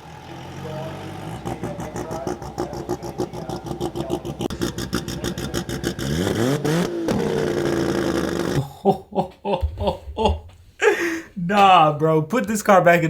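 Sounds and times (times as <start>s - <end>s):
drag car engine idling and revving: 0.0s - 8.6s.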